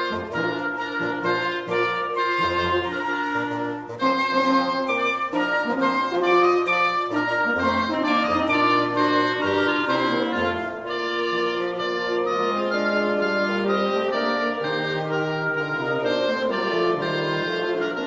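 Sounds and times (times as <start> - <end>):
woodwind quintet playing: 0.0 - 18.0.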